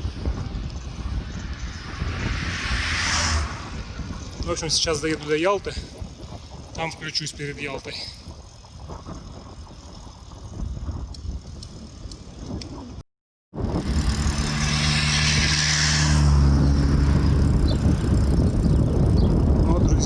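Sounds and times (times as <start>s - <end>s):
motor vehicle passing: 0.0s - 6.1s, 13.7s - 19.4s
wind on microphone: 0.0s - 13.0s, 13.6s - 20.0s.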